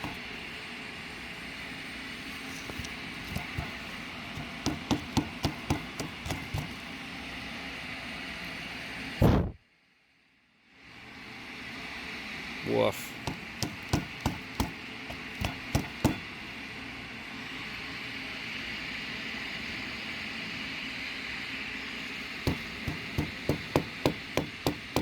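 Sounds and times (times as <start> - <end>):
filters knocked on hard surface: 0.0 - 0.3, 2.8 - 6.8, 13.2 - 16.3, 22.5 - 25.0.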